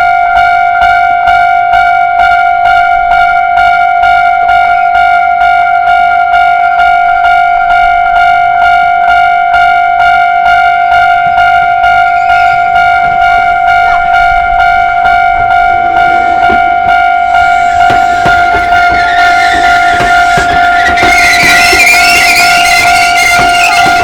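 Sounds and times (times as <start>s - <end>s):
level crossing warning bell: 0.0s - 24.0s
approaching train rumble: 6.9s - 24.0s.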